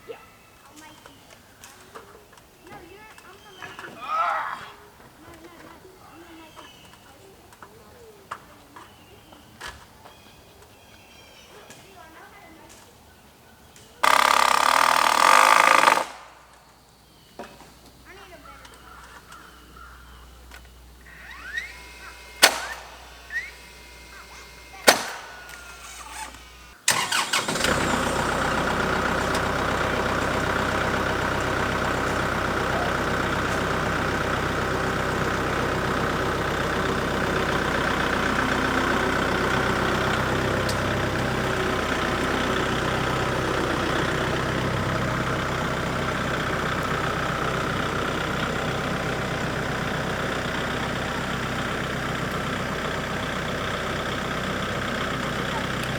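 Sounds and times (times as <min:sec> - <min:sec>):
engine starting and running: 0:14.0 - 0:16.7, 0:20.5 - 0:55.9.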